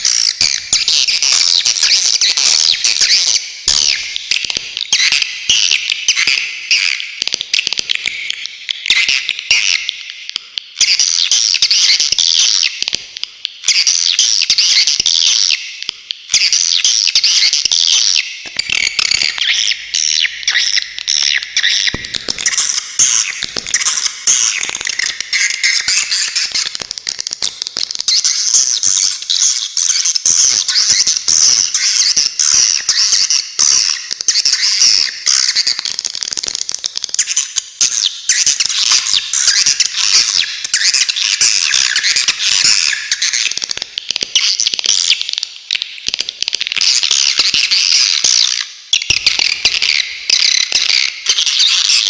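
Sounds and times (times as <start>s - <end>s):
swiftlets twittering and chirping: 16.7s - 45.3s, 46.8s - 52.0s.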